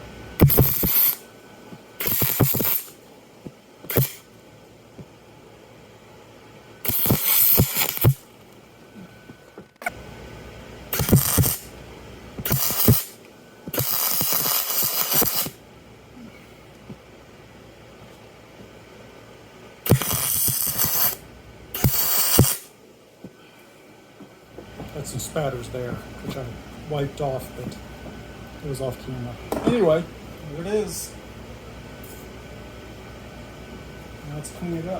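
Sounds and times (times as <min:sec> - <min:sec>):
arc welding crackling hiss: 0:00.0 - 0:04.4, 0:06.8 - 0:08.4, 0:10.8 - 0:11.8, 0:12.4 - 0:15.6, 0:19.8 - 0:22.8.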